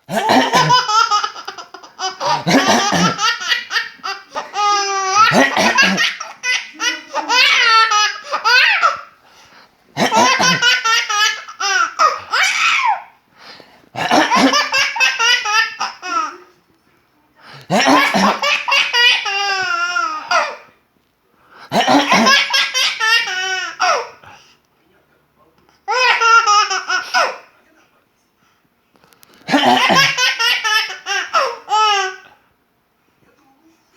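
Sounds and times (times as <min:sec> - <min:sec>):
baby laughing: 0:00.1 - 0:09.1, 0:10.0 - 0:13.1, 0:14.0 - 0:16.5, 0:17.7 - 0:20.6, 0:21.8 - 0:24.2, 0:25.9 - 0:27.5, 0:29.5 - 0:32.3.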